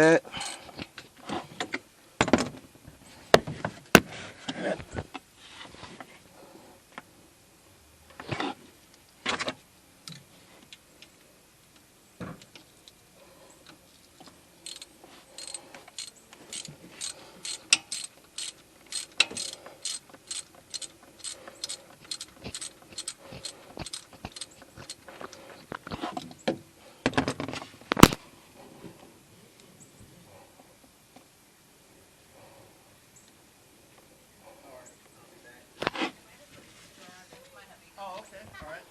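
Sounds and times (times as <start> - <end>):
ratchet wrench clicking: 14.6 - 25.0.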